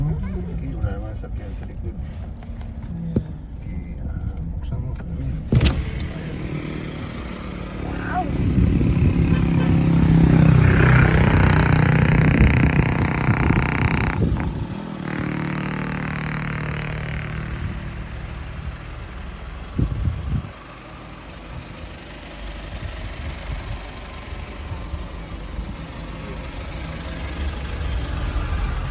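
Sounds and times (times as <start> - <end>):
vehicle engine running: 0.0 - 28.9
low bump: 5.4 - 7.8.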